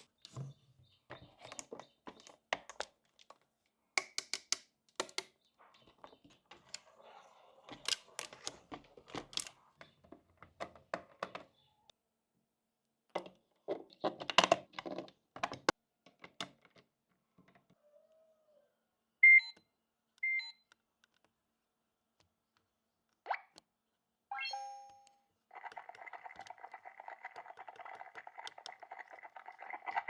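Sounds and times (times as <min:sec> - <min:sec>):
plastic toy pieces clicking: 0:04.0 - 0:05.3, 0:25.6 - 0:29.9.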